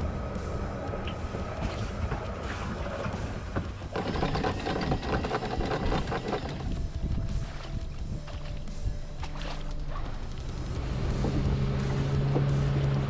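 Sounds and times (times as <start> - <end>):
boat diesel engine humming: 0.0 - 13.0
rapid mechanical clatter: 0.3 - 7.2.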